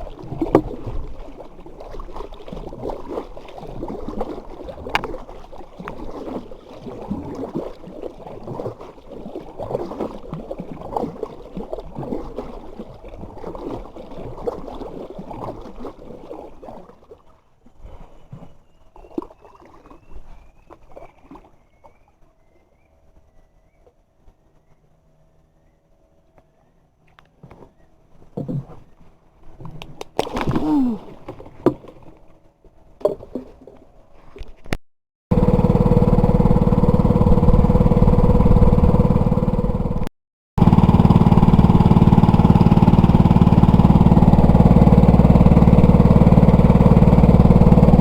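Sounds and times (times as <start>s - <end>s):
water splashing and sloshing: 0.0s - 22.4s, 27.0s - 48.0s.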